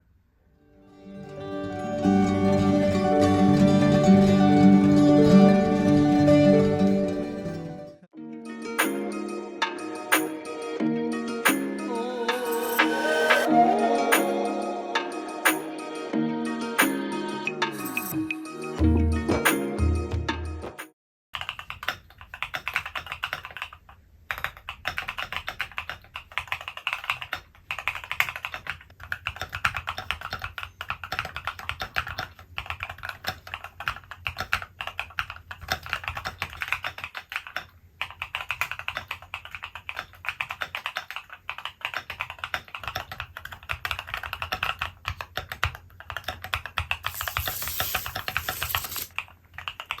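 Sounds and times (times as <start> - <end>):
mechanical keyboard typing: 21.4 - 50.0.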